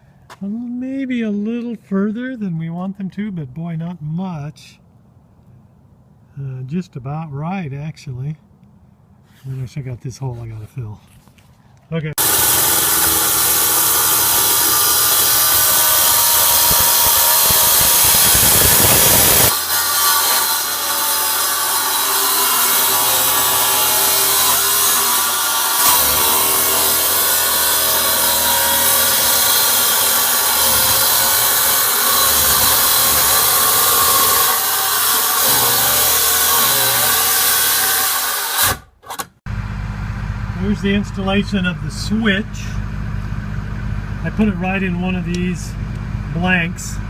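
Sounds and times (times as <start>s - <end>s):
power tool working on metal: 12.2s - 38.9s.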